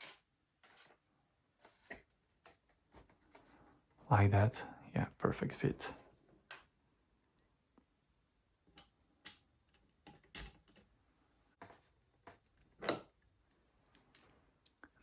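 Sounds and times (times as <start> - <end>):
small plastic parts clicking: 8.7 - 10.9.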